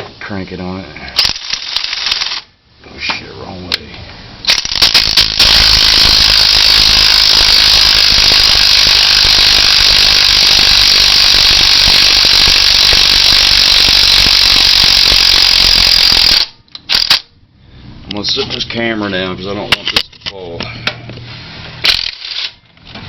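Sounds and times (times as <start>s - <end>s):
tool ratcheting clatter: 1.2s - 2.4s, 4.5s - 17.2s, 21.8s - 22.6s
sharp clicks: 4.5s - 17.3s.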